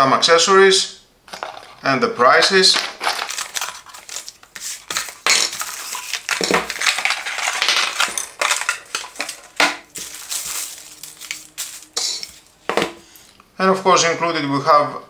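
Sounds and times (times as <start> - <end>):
plastic parts clicking and knocking: 1.3 - 1.8, 2.7 - 10.7
packaging rustling: 2.7 - 13.3.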